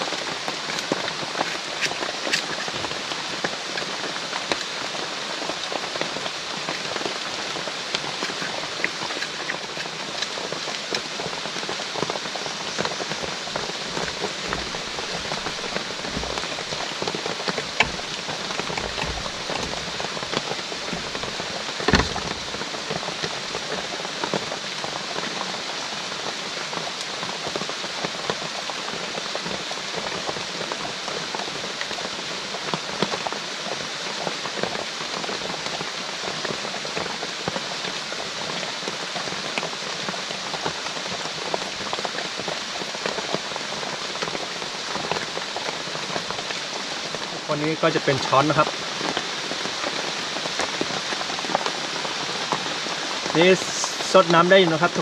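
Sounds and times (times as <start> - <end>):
heavy rain falling: 0.0 - 55.0.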